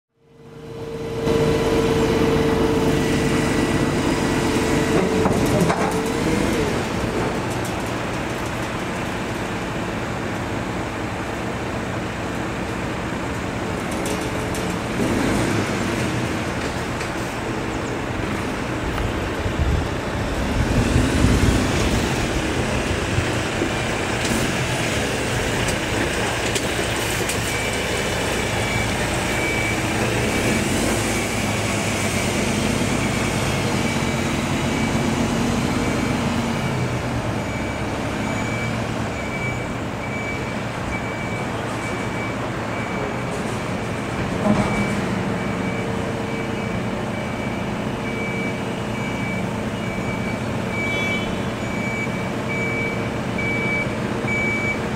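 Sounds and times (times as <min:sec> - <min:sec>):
street traffic passing: 0:00.2 - 0:54.9
loud vehicle passing: 0:00.5 - 0:07.5, 0:19.4 - 0:25.6.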